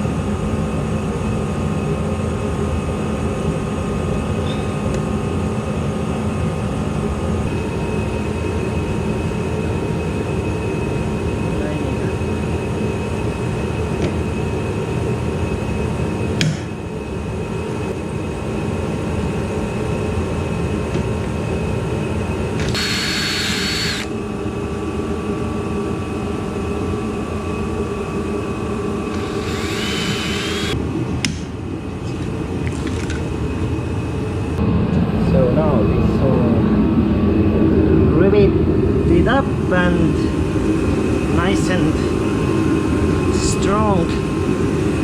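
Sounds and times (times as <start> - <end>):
electric drill whine: 22.4 - 24.4, 27.4 - 30.8.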